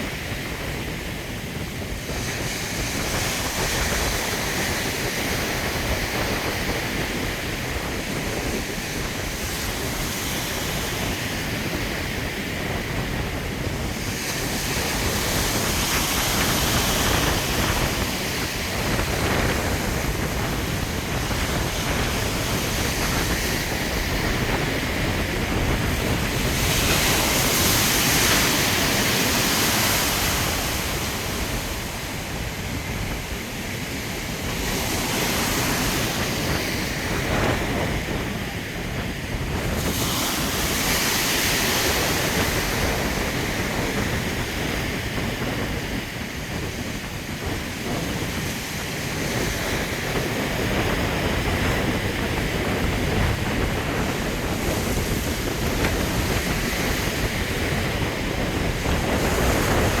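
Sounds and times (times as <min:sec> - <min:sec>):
ocean surf breaking: 0:00.0 - 1:00.0
wind buffeting microphone: 0:00.0 - 1:00.0.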